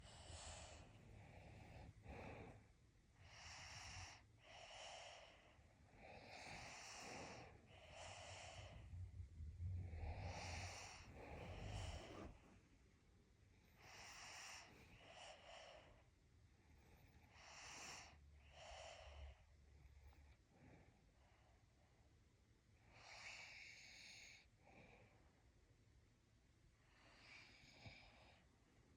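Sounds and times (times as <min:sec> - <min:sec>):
person snoring quietly: 0:03.2 - 0:08.9, 0:09.7 - 0:12.4, 0:13.8 - 0:15.9, 0:17.2 - 0:19.4.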